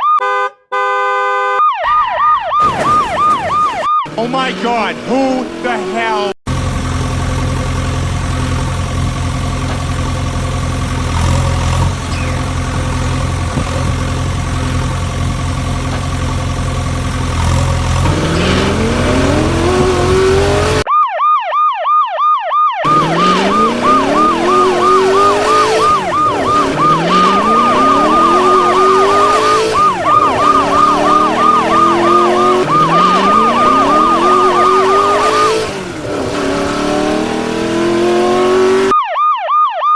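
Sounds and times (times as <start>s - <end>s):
rapid yelping siren: 0.0s - 0.2s, 1.4s - 4.6s, 18.1s - 35.7s, 37.0s - 39.9s
steady engine drone: 4.1s - 20.9s, 22.9s - 38.9s.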